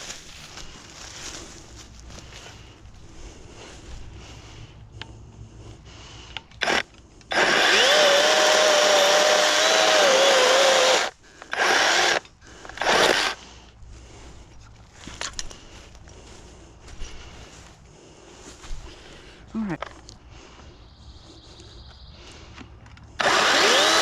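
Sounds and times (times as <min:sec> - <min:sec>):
electric chainsaw cutting wood: 0:06.6 - 0:13.4, 0:23.2 - 0:24.0.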